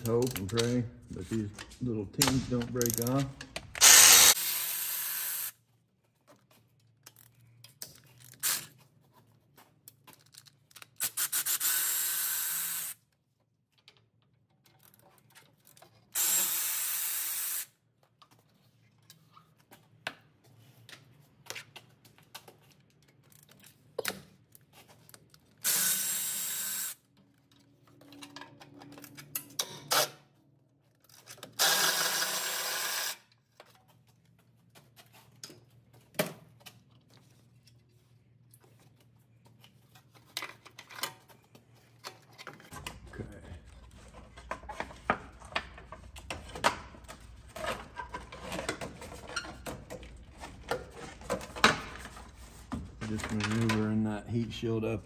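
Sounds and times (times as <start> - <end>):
handling clicks and knocks: 0.0 - 3.8
power tool bursts: 3.8 - 5.5, 16.2 - 17.7, 31.6 - 33.2.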